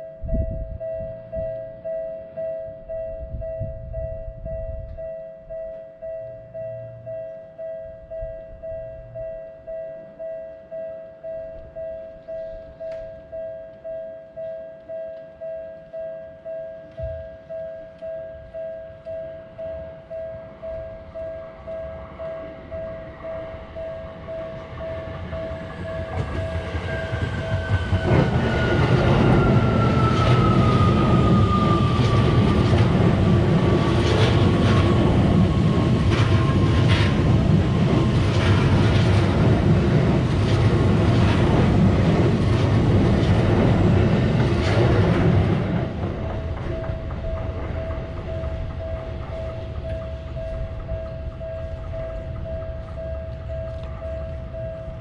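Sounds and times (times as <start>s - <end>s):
train rumble: 0.0s - 10.2s, 16.9s - 55.0s
railroad crossing bell ringing: 0.0s - 55.0s
wheels clattering over rail joints: 23.4s - 54.6s.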